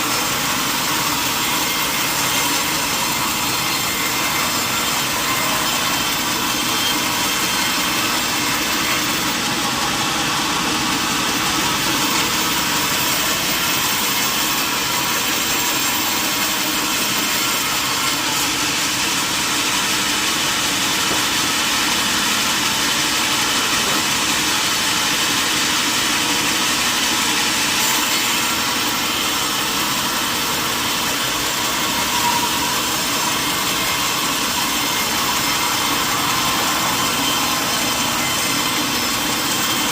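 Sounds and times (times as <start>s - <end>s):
sawmill machinery running: 0.0s - 39.9s.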